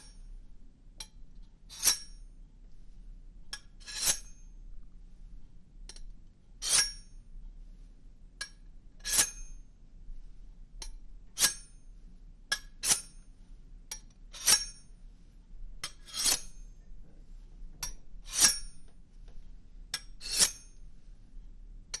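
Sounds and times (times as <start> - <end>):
faint low hum: 4.3 - 22.0.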